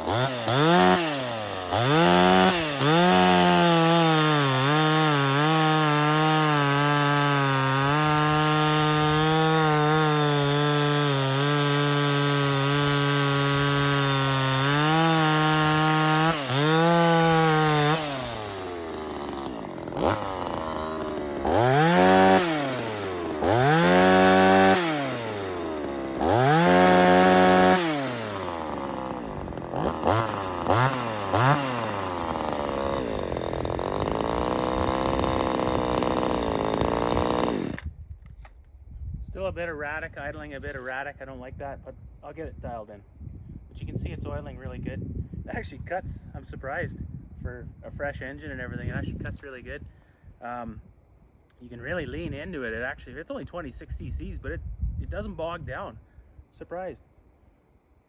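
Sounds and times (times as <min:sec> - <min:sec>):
chainsaw idling and revving: 0:00.0 - 0:37.9
chainsaw cutting wood: 0:00.0 - 0:38.6.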